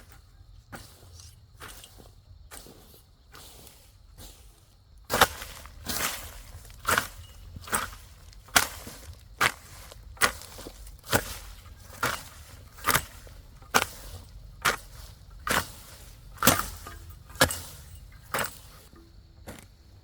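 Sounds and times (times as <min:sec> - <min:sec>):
hand tool chopping blows: 0:05.1 - 0:19.6.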